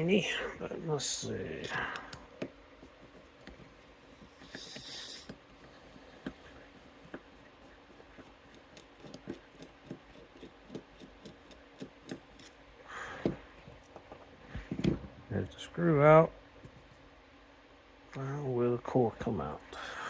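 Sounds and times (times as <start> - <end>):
screwdriver scraping: 2.8 - 12.6.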